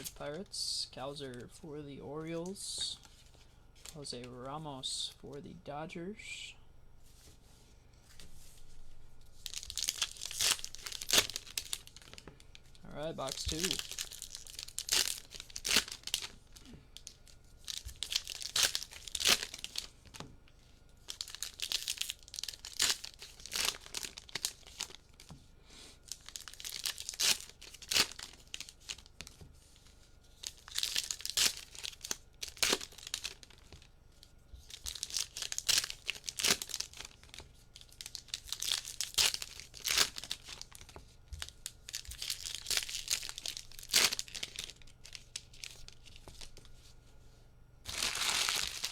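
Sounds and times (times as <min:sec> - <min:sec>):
card pack wrappers crinkling: 0:09.4 - 0:20.0, 0:21.0 - 0:25.3, 0:26.0 - 0:46.8, 0:47.9 - 0:48.9.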